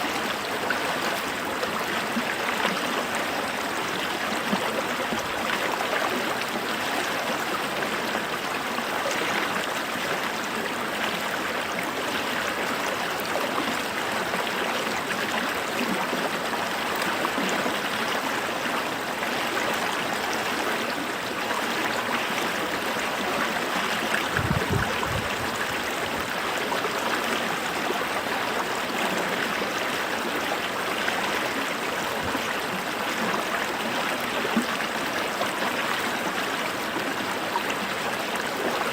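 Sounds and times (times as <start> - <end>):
creek babbling over stones: 0.0 - 38.9.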